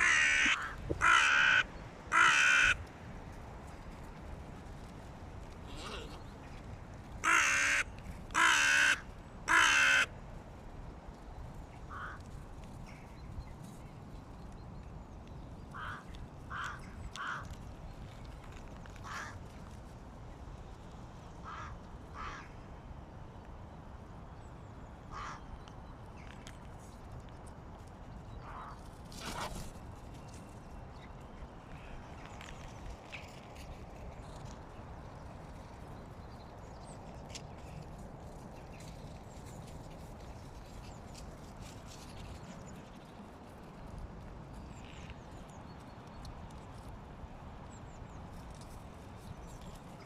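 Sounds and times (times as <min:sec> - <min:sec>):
crows cawing: 0:00.0 - 0:02.8, 0:07.2 - 0:10.1, 0:11.9 - 0:12.2, 0:15.7 - 0:17.5, 0:19.0 - 0:19.4, 0:21.4 - 0:22.6, 0:25.1 - 0:25.4.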